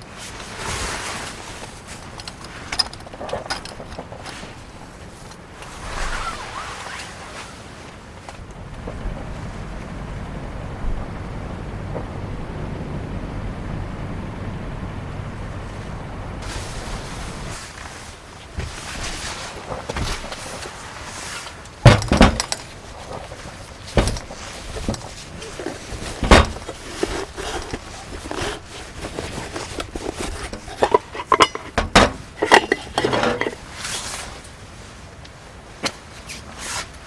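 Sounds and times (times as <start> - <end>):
dishes knocking and clinking: 21.9 - 22.7, 24.0 - 33.6.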